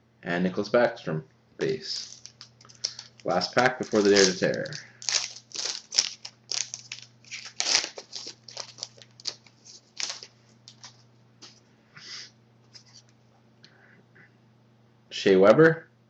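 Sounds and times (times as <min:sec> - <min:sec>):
card wrapper crinkling: 0:01.6 - 0:11.6.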